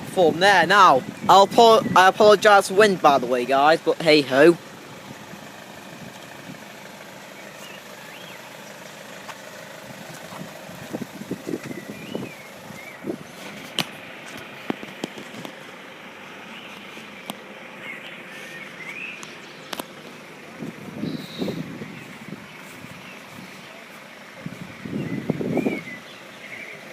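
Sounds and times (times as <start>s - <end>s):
diesel train idling hum: 0.0s - 26.9s
bird chirps: 6.8s - 8.8s, 11.5s - 13.4s, 16.4s - 19.8s, 21.0s - 24.0s, 24.8s - 26.9s.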